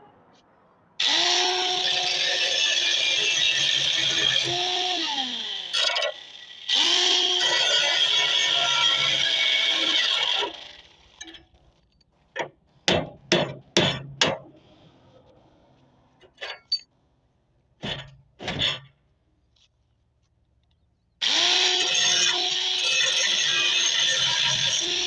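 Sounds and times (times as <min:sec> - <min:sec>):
hammer striking metal: 0:12.9 - 0:14.4.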